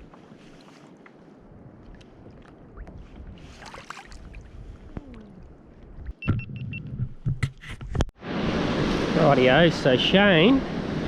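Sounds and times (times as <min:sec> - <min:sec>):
water sloshing against hull: 0:00.0 - 0:06.7.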